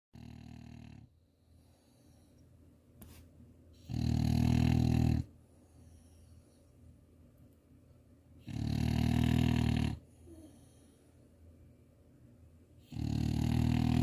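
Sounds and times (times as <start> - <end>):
dog snoring: 0.2 - 1.1, 3.8 - 5.3, 8.4 - 10.9, 12.8 - 14.0
faint dog breathing: 1.0 - 2.6, 4.1 - 7.0, 8.5 - 11.4.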